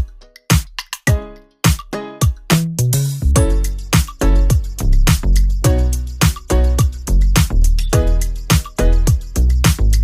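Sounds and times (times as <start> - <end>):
percussive hits: 0.0 - 10.0
deep bass line: 2.6 - 10.0.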